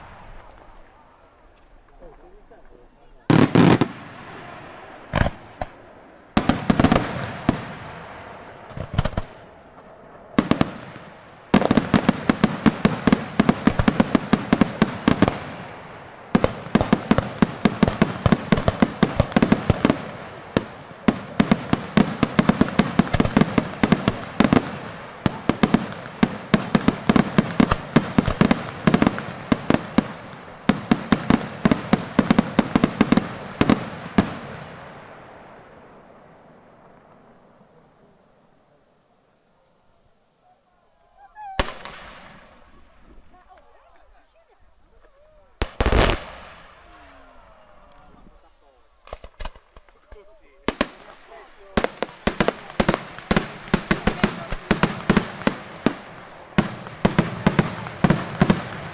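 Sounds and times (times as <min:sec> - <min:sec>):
rapid firecracker bangs: 0:00.0 - 0:01.0, 0:03.3 - 0:37.8, 0:41.6 - 0:43.0, 0:45.6 - 0:47.3, 0:49.0 - 0:58.9
fireworks bangs: 0:00.0 - 0:38.9, 0:41.2 - 0:58.9.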